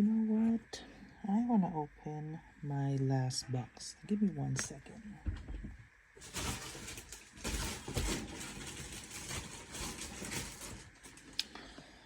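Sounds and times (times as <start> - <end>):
rustling and handling noises: 5.3 - 11.4.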